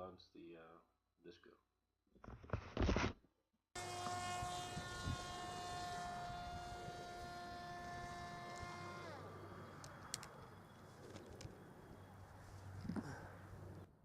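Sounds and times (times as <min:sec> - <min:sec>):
drone motor whine: 0:03.8 - 0:11.0.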